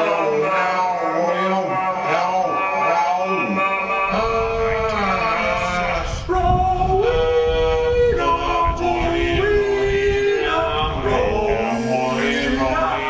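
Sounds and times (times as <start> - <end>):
man singing long held notes: 0.0 - 13.0.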